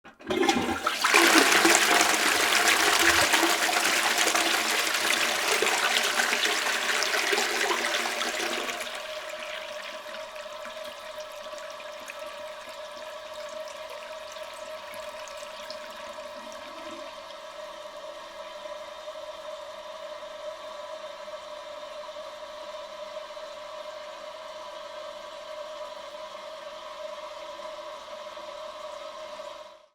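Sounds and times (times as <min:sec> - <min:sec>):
toilet flushing: 0:00.0 - 0:18.8.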